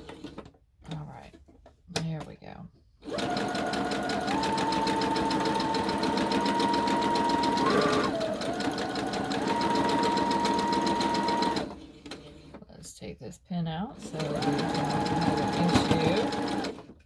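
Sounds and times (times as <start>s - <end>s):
sewing machine stitching: 3.0s - 12.6s, 14.0s - 17.0s.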